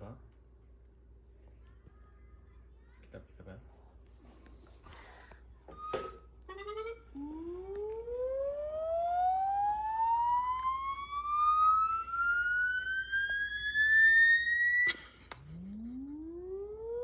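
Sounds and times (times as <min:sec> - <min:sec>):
siren wail rising in pitch: 0:06.5 - 0:17.0.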